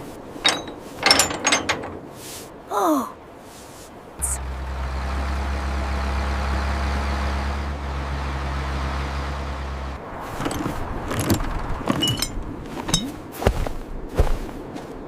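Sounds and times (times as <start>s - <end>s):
vehicle engine running: 4.2s - 12.3s.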